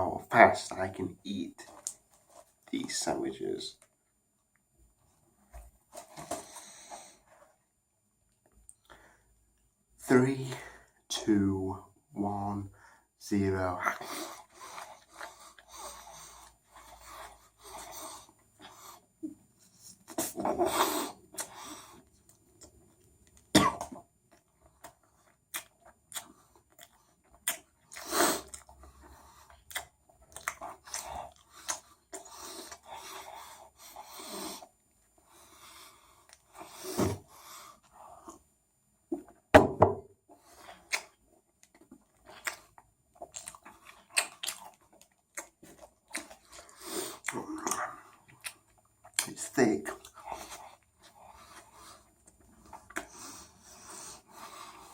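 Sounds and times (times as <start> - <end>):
person chewing: 19.9 - 22.7, 24.3 - 34.7, 40.5 - 54.9
person coughing: 23.6 - 24.0.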